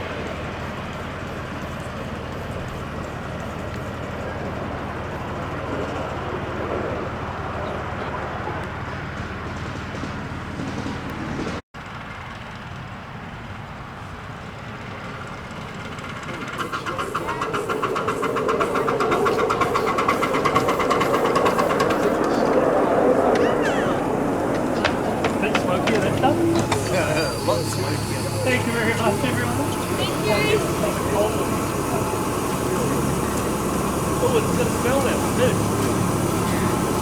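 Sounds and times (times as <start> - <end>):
miniature steam engine running: 0.0 - 6.4, 15.0 - 37.0
rapid exhaust beat: 16.2 - 37.0.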